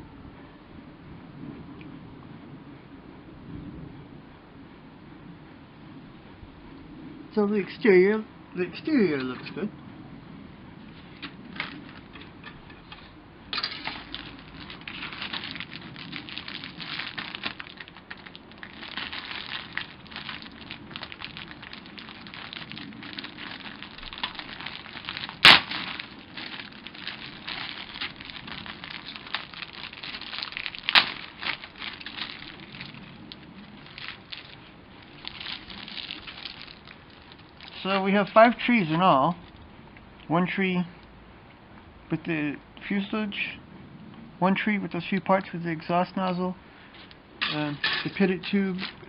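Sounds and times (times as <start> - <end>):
plastic bags crinkling: 13.6 - 38.0.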